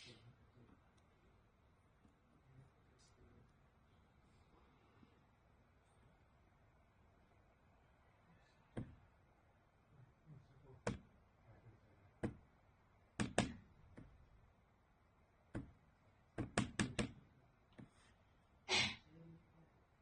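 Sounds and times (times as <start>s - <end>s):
sharp knocks and clicks: 10.8s - 11.1s, 12.2s - 12.5s, 13.2s - 14.2s, 15.5s - 17.9s.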